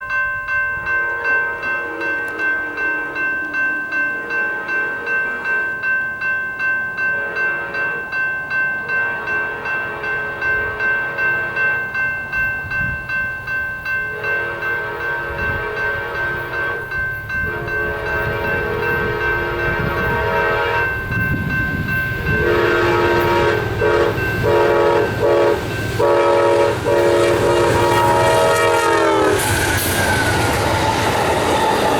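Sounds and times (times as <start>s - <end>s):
level crossing bell ringing: 0.0s - 29.2s
locomotive horn blasts: 1.0s - 5.5s, 7.1s - 8.0s, 14.1s - 21.2s, 22.2s - 31.9s.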